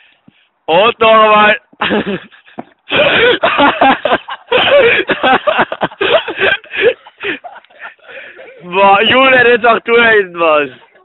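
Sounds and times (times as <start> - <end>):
men talking: 0.7 - 2.2, 2.9 - 10.9
men laughing: 1.8 - 9.3.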